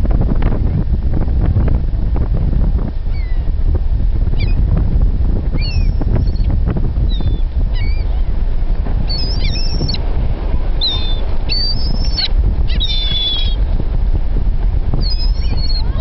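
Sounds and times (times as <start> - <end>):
steady low rumble: 0.0 - 16.0
seagulls calling: 3.1 - 3.5, 5.6 - 6.5, 7.1 - 8.3, 9.1 - 10.1, 10.7 - 13.6, 15.0 - 16.0.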